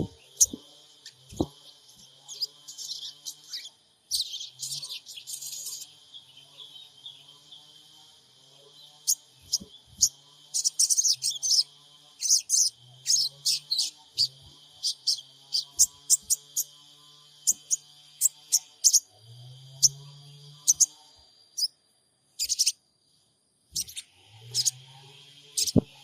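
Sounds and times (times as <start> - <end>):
bird chirping in rapid bursts: 0.0 - 6.8, 8.9 - 16.8, 17.4 - 19.1, 20.6 - 20.9, 22.4 - 22.8, 23.7 - 24.8, 25.5 - 25.9.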